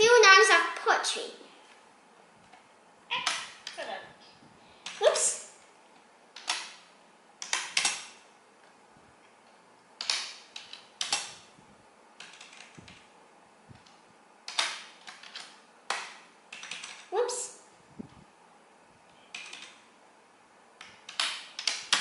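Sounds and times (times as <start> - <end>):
typing on computer keyboard: 12.2 - 13.0, 14.5 - 17.1, 19.3 - 19.8, 20.8 - 22.0.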